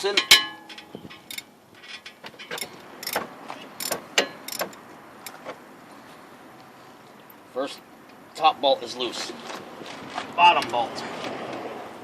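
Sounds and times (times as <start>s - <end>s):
wrench metal clicks: 0.2s - 3.2s, 3.8s - 5.4s.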